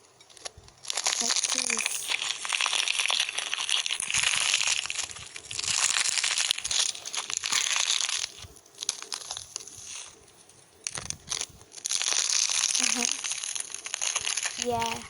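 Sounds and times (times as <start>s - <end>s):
crackling and crunching: 0.0s - 15.0s.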